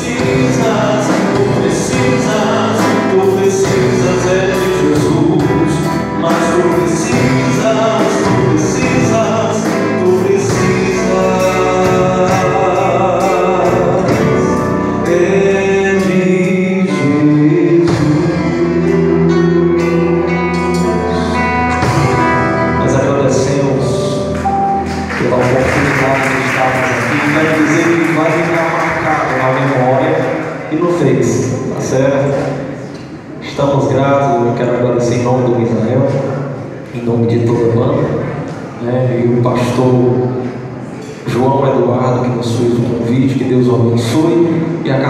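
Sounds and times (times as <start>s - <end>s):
person singing: 0.0s - 30.0s
electric guitar: 0.0s - 33.4s
bass guitar: 0.0s - 38.8s.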